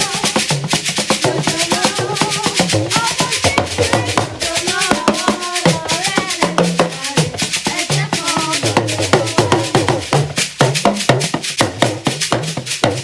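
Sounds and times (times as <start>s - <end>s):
upbeat hand percussion music: 0.0s - 13.0s.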